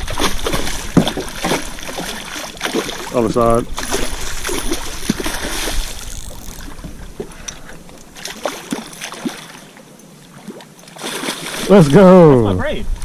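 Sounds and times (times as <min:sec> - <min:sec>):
shallow water sloshing: 0:00.0 - 0:12.5
small splashes and clicks: 0:00.1 - 0:11.7
wind rumbling on microphone: 0:12.4 - 0:13.0.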